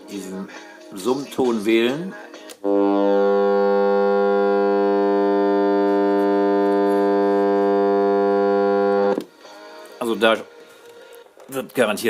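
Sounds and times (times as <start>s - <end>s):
alarm clock buzzer: 2.6s - 9.2s.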